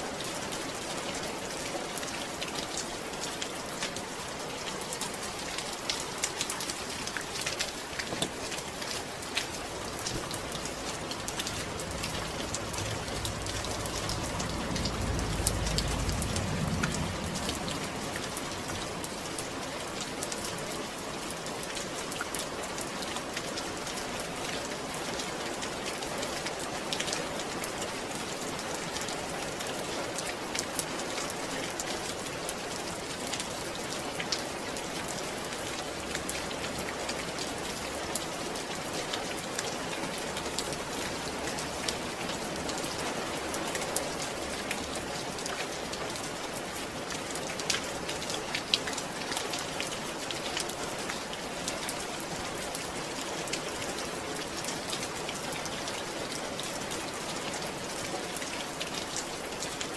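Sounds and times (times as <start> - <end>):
steady rain falling: 0.0 - 59.9
low rumble: 10.3 - 19.6.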